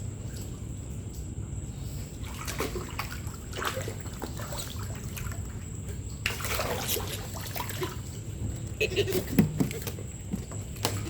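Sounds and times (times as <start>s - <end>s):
water trickling and splashing: 0.0s - 11.0s.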